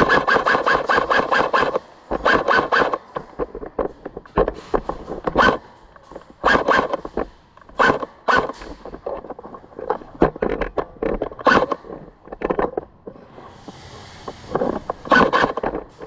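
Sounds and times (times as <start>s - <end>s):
airsoft guns firing bursts: 0.0s - 3.1s.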